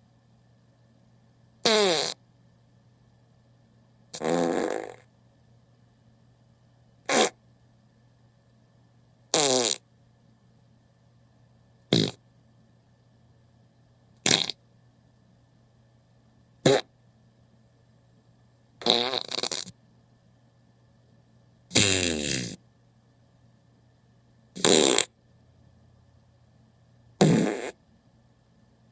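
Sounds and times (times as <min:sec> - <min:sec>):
buzzy fart sound effects: 0:01.6 - 0:02.2, 0:04.1 - 0:05.1, 0:07.1 - 0:07.4, 0:09.3 - 0:09.8, 0:11.9 - 0:12.2, 0:14.2 - 0:14.6, 0:16.6 - 0:16.9, 0:18.8 - 0:19.7, 0:21.7 - 0:22.6, 0:24.6 - 0:25.1, 0:27.2 - 0:27.8.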